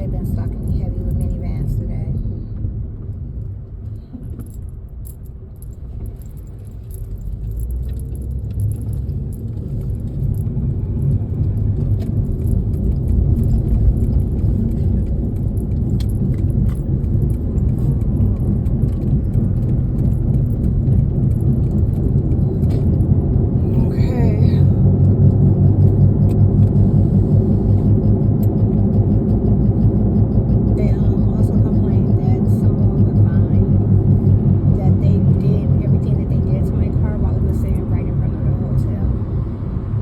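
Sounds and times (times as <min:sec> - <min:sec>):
car road and engine rumble: 0:00.0 - 0:40.0
small jingling rattles: 0:04.2 - 0:23.1.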